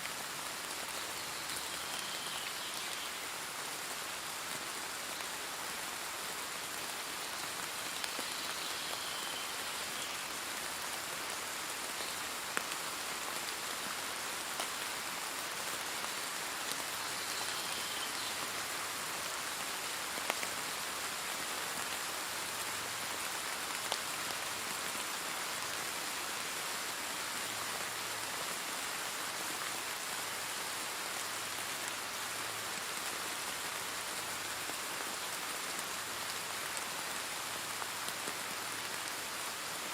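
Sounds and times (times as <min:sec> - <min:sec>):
raindrops ticking on a surface: 0:00.0 - 0:39.7
steady rain hiss: 0:00.0 - 0:39.9.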